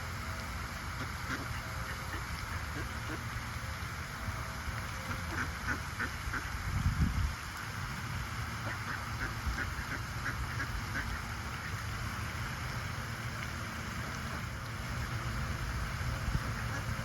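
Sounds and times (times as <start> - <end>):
ducks quacking: 1.0 - 3.2, 5.1 - 6.5.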